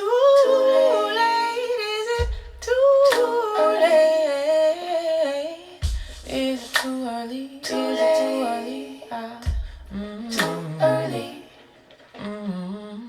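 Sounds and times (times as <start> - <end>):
female vocal harmonies humming: 0.0 - 13.0
deep thump: 9.5 - 9.9.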